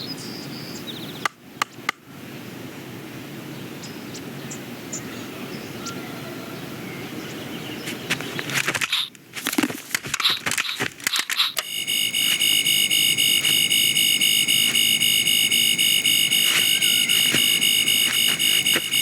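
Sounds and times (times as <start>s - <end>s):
high-pitched electronic buzzing tone: 11.6s - 19.0s.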